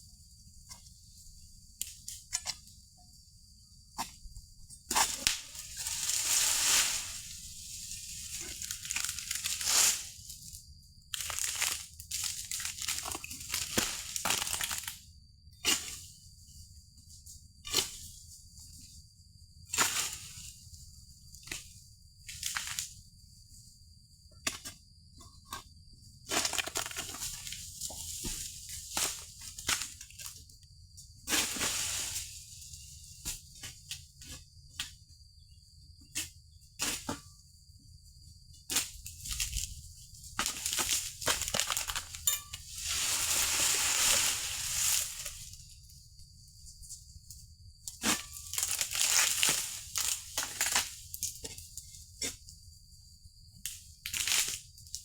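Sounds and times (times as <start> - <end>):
palm fronds crackling and cracking: 5.1 - 10.1, 11.2 - 15.0, 26.3 - 27.4, 40.4 - 45.6, 48.2 - 51.0, 54.1 - 54.6.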